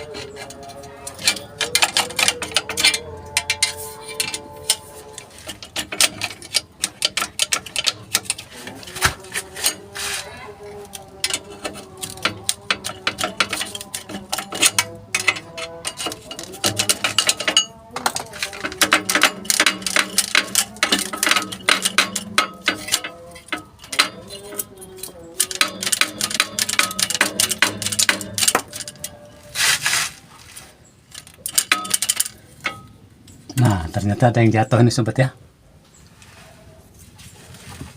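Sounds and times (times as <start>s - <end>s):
hand tools clicking and clanking: 0.0s - 35.0s.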